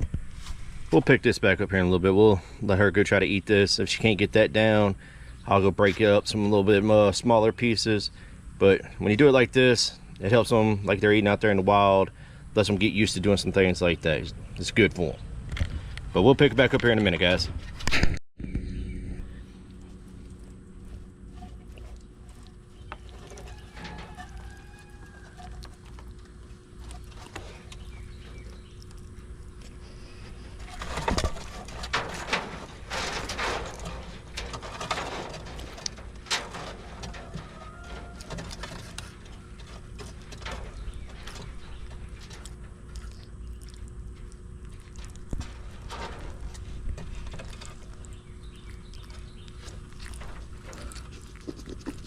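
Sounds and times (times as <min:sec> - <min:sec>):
knocks and crunching: 0:14.8 - 0:52.0
lizard biting and tearing food: 0:48.8 - 0:52.0.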